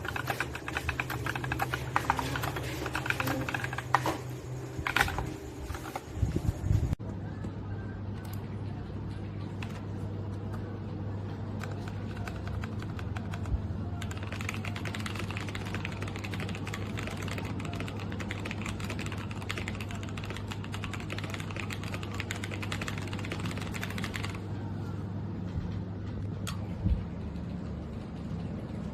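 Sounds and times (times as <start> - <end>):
typing on mechanical keyboard: 0.0 - 6.1, 11.5 - 24.4
steady low hum: 0.0 - 28.9.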